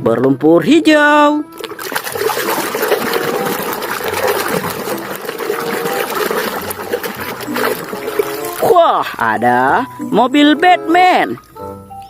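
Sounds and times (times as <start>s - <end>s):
water running and splashing: 1.6s - 9.2s.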